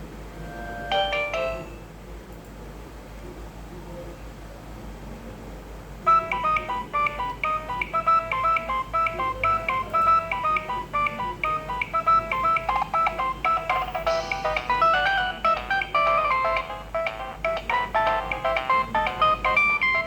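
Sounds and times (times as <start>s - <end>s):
electronic phone ringtone: 0.5s - 1.8s, 6.1s - 20.0s.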